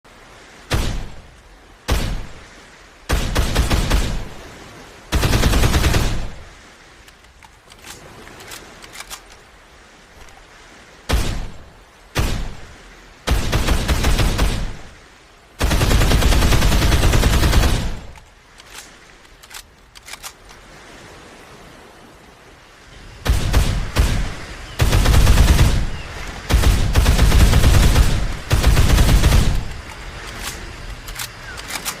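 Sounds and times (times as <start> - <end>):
single gunshots: 0.6 - 1.2, 1.8 - 2.4, 3.1 - 4.4, 11.1 - 14.9, 23.2 - 30.7
automatic gunfire bursts: 5.1 - 6.4, 15.6 - 18.1, 23.3 - 29.8
faint clicks: 7.0 - 9.5, 18.0 - 20.7, 29.6 - 32.0.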